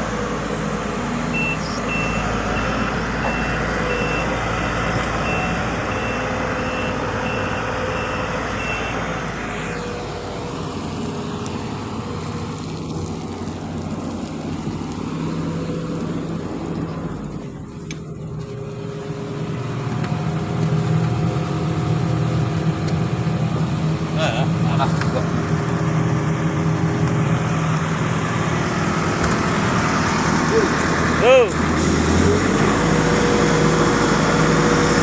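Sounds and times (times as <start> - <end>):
excavator diesel engine running: 0.0 - 35.0
travel alarm beeping: 1.3 - 4.3.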